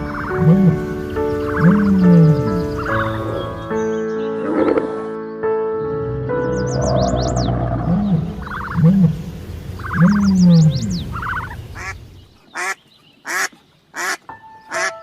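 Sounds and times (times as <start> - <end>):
harsh animal calls: 0.0 - 3.8, 5.8 - 14.9
low animal calls: 0.0 - 3.8, 5.8 - 12.1
bird chirps: 0.0 - 5.0, 5.8 - 15.0.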